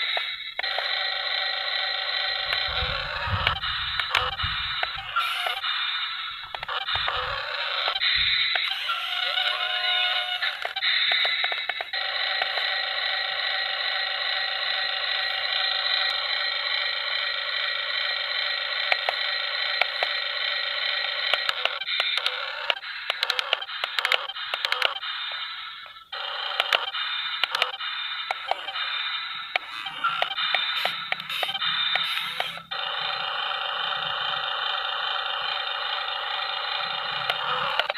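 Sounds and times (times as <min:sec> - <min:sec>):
electronic toy tone: 0:00.0 - 0:37.9.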